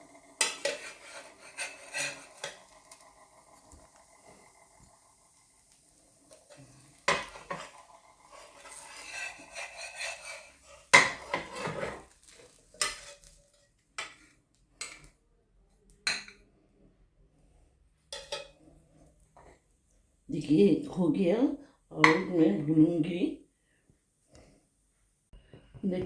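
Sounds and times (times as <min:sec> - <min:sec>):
metal utensils clinking and scraping: 0:00.1 - 0:04.5, 0:06.3 - 0:15.2, 0:18.1 - 0:18.6.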